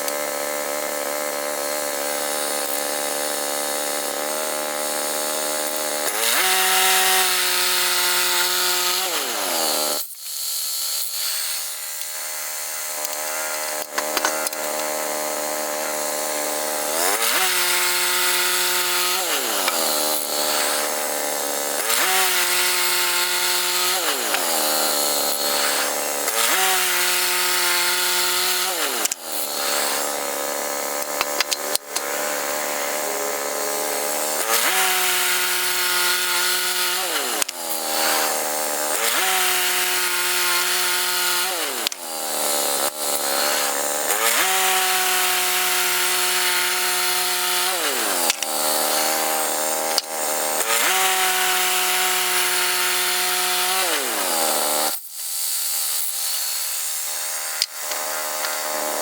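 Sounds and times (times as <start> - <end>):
clicks: 13.0 - 15.0, 31.0 - 32.1.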